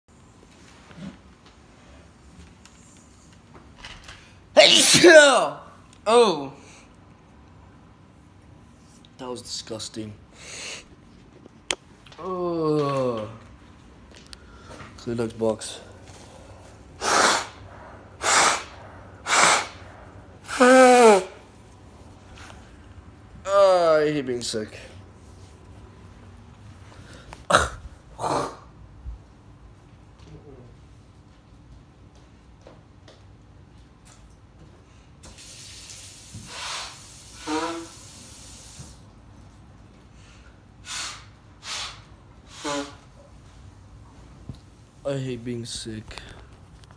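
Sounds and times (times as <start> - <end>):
person groaning: 4.6 - 6.7, 12.2 - 13.5, 20.4 - 21.4, 23.5 - 24.1, 27.5 - 28.7
person sneezing: 4.6 - 6.7, 17.0 - 21.5, 27.4 - 28.7, 36.5 - 38.1, 40.9 - 43.0
noisy breath blasts: 10.3 - 11.0, 14.3 - 15.0, 15.8 - 21.4, 35.1 - 39.0, 40.1 - 43.0
steady hiss: 13.7 - 27.6, 34.9 - 39.3, 40.0 - 46.9.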